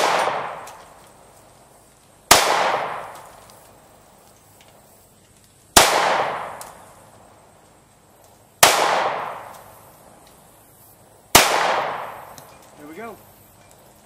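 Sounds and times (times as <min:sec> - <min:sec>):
pistol shots with ringing echo: 0:00.0 - 0:00.8, 0:02.3 - 0:03.2, 0:05.8 - 0:06.6, 0:08.6 - 0:09.6, 0:11.3 - 0:12.3.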